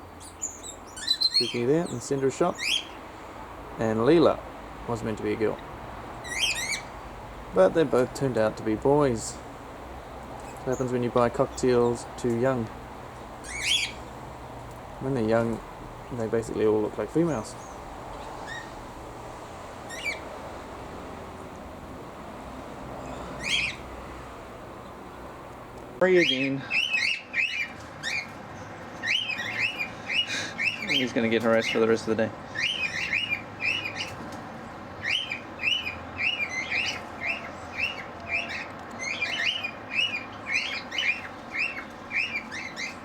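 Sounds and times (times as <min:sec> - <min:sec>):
cockatiel chirping: 0:00.2 - 0:03.0, 0:06.2 - 0:06.9, 0:13.4 - 0:14.1, 0:17.6 - 0:18.8, 0:19.9 - 0:20.2, 0:23.4 - 0:23.8, 0:26.2 - 0:28.3, 0:29.0 - 0:31.8, 0:32.6 - 0:34.1, 0:35.0 - 0:43.0.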